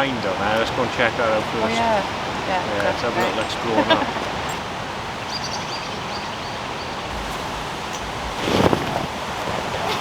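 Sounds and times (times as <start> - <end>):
waterfall and stream rushing: 0.0 - 5.4, 6.0 - 10.0
wind on microphone: 7.1 - 10.0.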